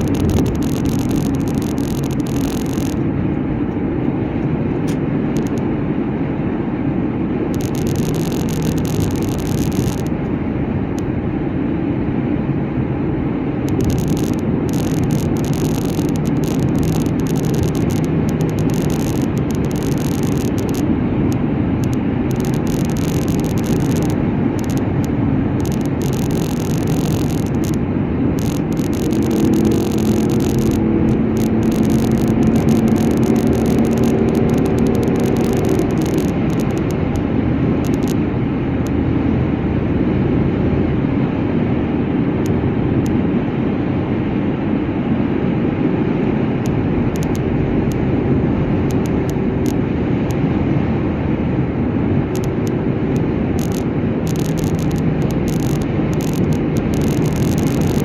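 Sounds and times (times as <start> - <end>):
humming tone: 0.0 - 4.1, 5.2 - 5.8, 7.4 - 11.3, 13.6 - 39.1, 51.1 - 58.0
car road and engine noise: 0.0 - 58.0.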